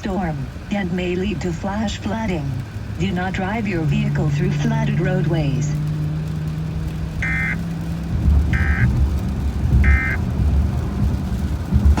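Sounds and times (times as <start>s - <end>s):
low car rumble: 0.0s - 12.0s
digital data tone bursts: 7.2s - 7.6s, 8.6s - 8.9s, 9.8s - 10.2s.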